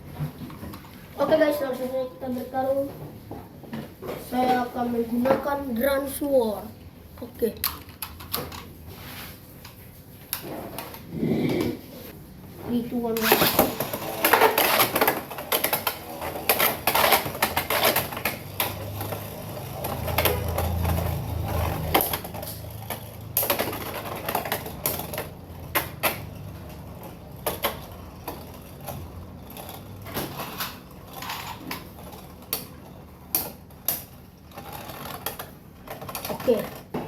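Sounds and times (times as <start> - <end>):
low hum of spinning tops: 10.5 - 37.0.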